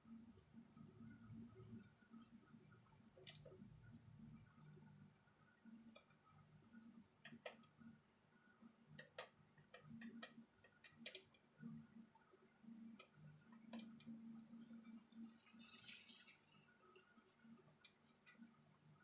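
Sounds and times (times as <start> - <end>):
small clicks and taps: 7.2 - 7.8, 8.9 - 11.5, 12.9 - 14.2.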